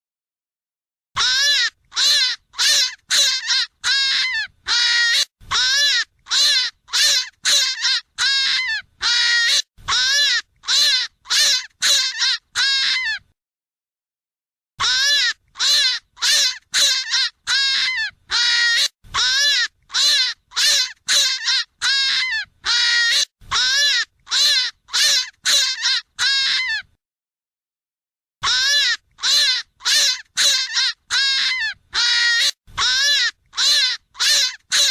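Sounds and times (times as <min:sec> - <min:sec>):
short animal calls: 0:01.2 - 0:13.2, 0:28.4 - 0:34.9.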